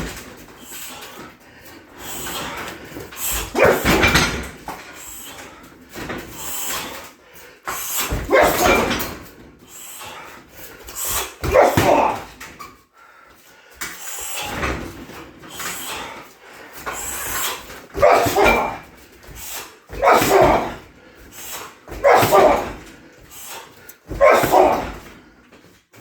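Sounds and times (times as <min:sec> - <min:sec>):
kicks thudding on heavy bag: 0:08.1 - 0:09.1, 0:11.4 - 0:12.4, 0:18.0 - 0:20.9, 0:21.9 - 0:22.9, 0:24.1 - 0:25.1.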